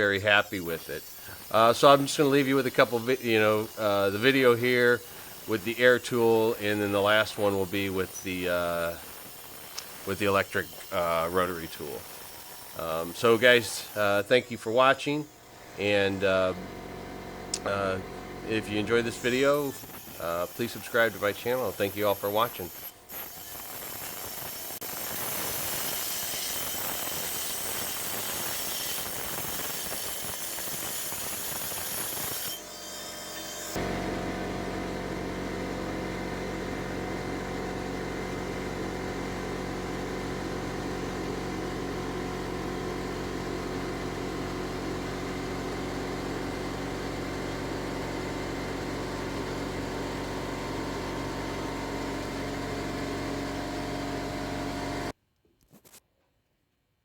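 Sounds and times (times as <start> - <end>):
rotary grinding tool grinding: 0.0 - 34.0.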